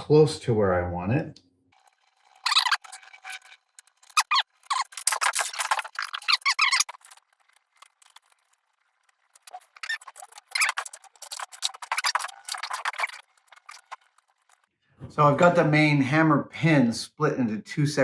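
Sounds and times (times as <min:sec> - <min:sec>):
small metal clicks: 0:01.8 - 0:14.7.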